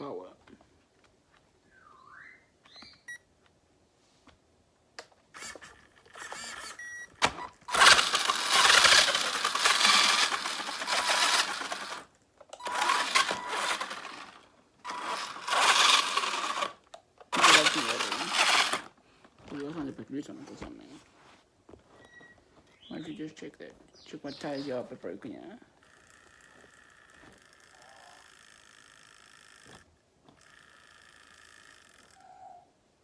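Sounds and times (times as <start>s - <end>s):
toy car electric motor whirring: 5.3s - 19.0s, 25.8s - 32.5s.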